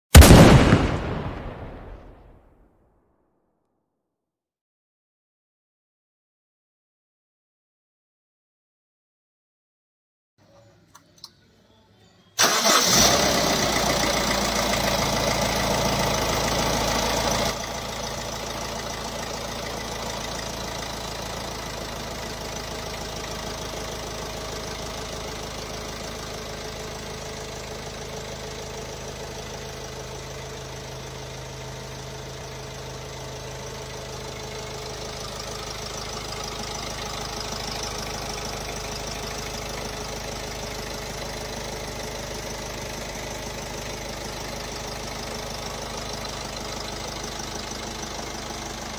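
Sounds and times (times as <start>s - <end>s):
diesel engine idling with knocking: 12.9s - 48.9s.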